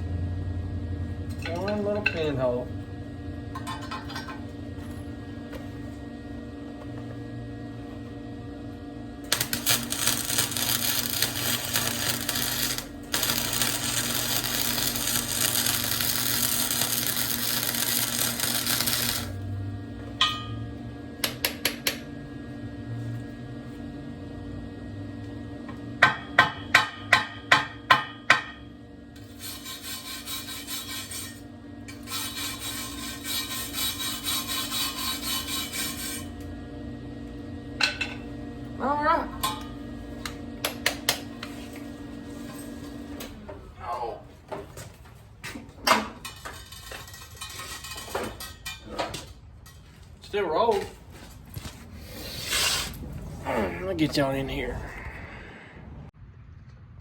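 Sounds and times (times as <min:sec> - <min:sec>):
steady hum: 0:00.0 - 0:44.4
metal scraping: 0:09.3 - 0:19.4, 0:52.2 - 0:53.5
welding crackling: 0:09.3 - 0:19.5
hammer strikes on metal: 0:20.2 - 0:20.6, 0:26.0 - 0:28.6.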